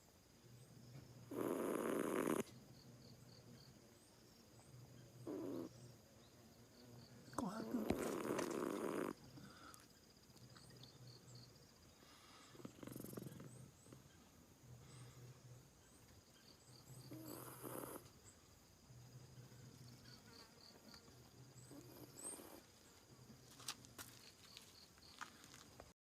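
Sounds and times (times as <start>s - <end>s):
cat snoring: 1.3s - 2.5s, 5.3s - 5.7s, 7.7s - 9.2s, 12.5s - 13.6s, 17.1s - 18.0s.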